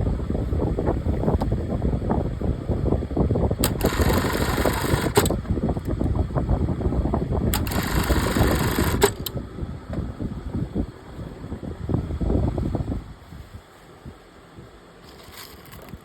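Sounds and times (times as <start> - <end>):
sewing machine clicks: 3.6 - 5.4, 7.5 - 9.4
sewing machine running: 3.6 - 5.4, 7.5 - 9.3.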